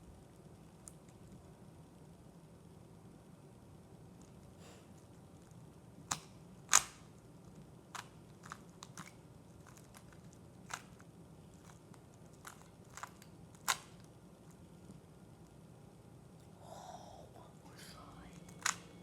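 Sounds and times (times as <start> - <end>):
puzzle cube clacking: 6.1 - 7.2, 7.9 - 14.6, 18.2 - 19.0.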